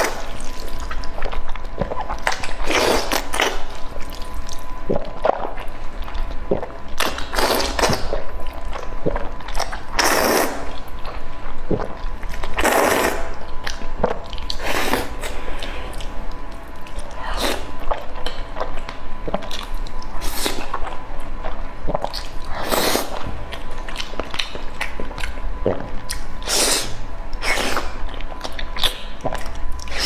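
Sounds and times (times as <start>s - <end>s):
chewing and biting: 0.0s - 30.0s.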